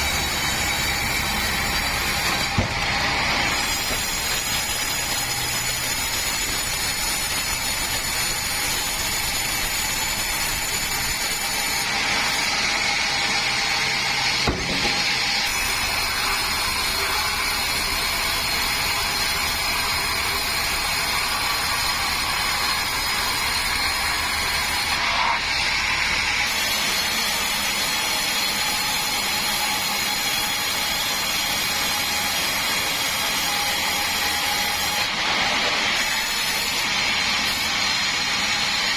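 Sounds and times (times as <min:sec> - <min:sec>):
high saw whine: 0:00.0 - 0:38.9
sawmill machinery sawing timber: 0:00.0 - 0:38.9
sharp knock: 0:14.4 - 0:15.2.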